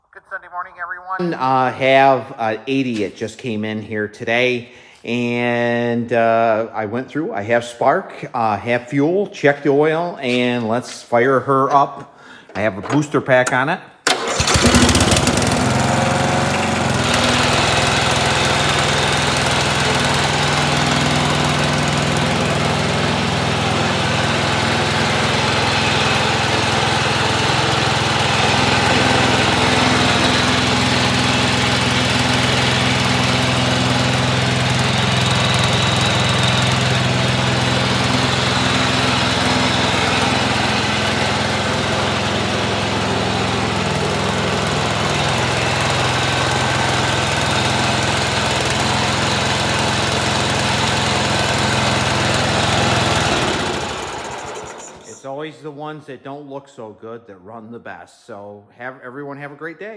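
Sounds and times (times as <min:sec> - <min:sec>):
lawn tractor engine running: 0:14.0 - 0:55.2.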